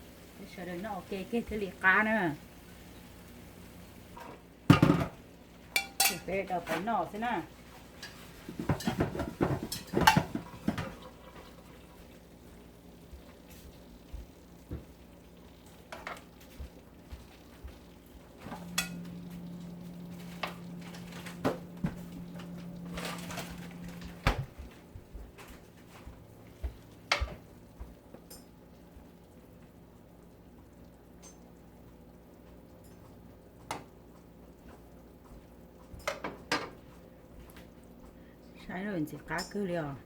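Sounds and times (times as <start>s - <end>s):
dishes and utensils clattering: 4.2s - 6.3s, 8.0s - 11.8s, 18.4s - 19.3s, 35.9s - 36.9s
steady low hum: 12.0s - 31.0s.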